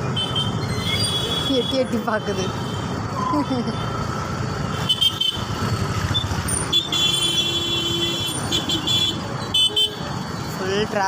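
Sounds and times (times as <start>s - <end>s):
street traffic: 0.0s - 11.0s
vehicle horns honking: 0.1s - 3.0s, 4.7s - 5.6s, 6.2s - 10.2s.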